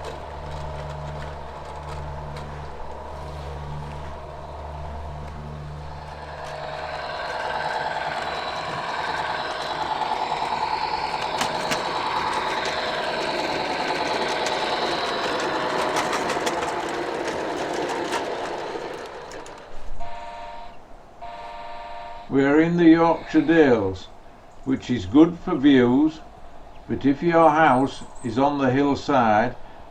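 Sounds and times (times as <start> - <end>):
sharp clicks of train wheels: 0.0 - 21.5
model train running on track: 0.0 - 26.2, 27.0 - 29.9.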